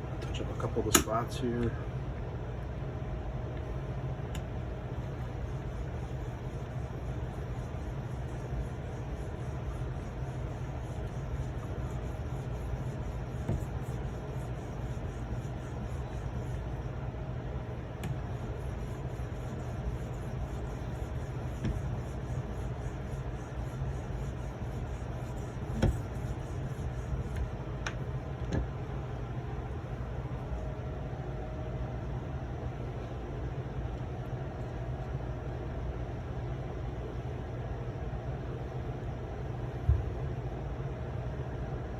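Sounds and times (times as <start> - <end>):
steady low hum: 0.0 - 41.9
light clicks and taps: 0.9 - 1.7.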